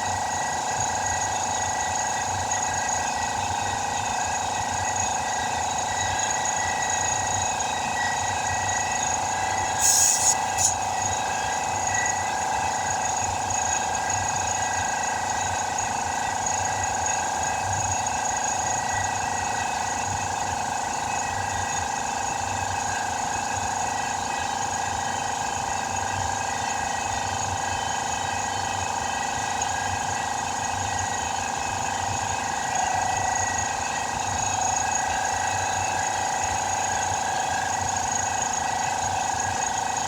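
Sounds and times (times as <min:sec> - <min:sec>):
machine whine: 0:00.2 - 0:14.7.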